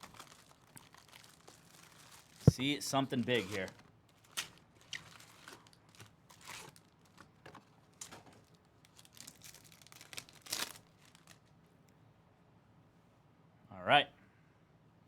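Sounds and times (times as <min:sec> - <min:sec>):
foil wrapper crinkling: 0:00.0 - 0:11.5.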